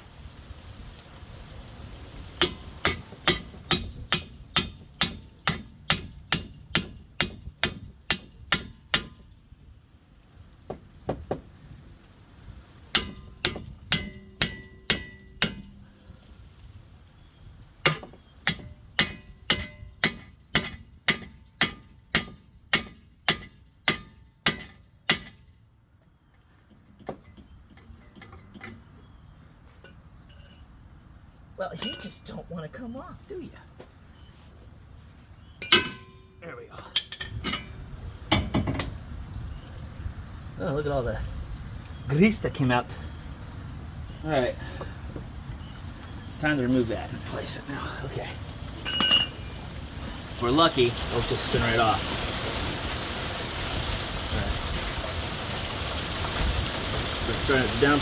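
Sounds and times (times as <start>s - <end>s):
hammer striking metal: 2.4s - 9.3s, 12.9s - 15.8s, 17.9s - 25.4s, 31.8s - 32.2s, 35.6s - 36.3s, 48.8s - 49.5s.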